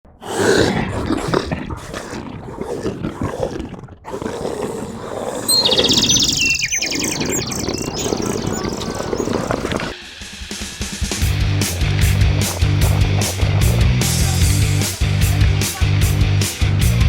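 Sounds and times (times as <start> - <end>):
birds calling: 4.1 - 10.0, 11.1 - 15.1
bird trill stepping down in pitch: 5.4 - 9.9
short bird chirps: 5.4 - 9.9.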